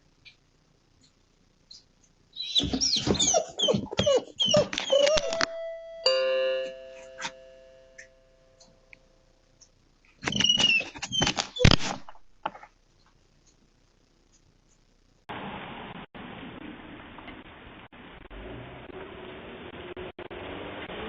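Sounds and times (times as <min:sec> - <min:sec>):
squeaking and clattering: 0:02.4 - 0:05.6, 0:10.2 - 0:12.1
doorbell chime: 0:05.2 - 0:08.8.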